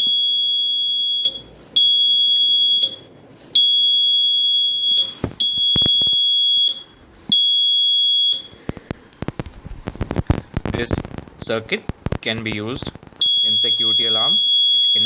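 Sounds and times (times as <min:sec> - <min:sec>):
alarm buzzer high-pitched tone: 0:00.0 - 0:08.5, 0:13.2 - 0:15.0
sharp clicks: 0:08.6 - 0:13.3.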